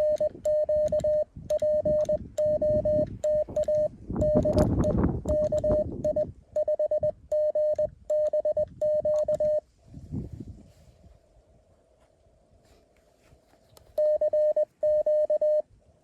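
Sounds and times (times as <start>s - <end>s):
morse code tone: 0.0s - 9.6s, 14.0s - 15.7s.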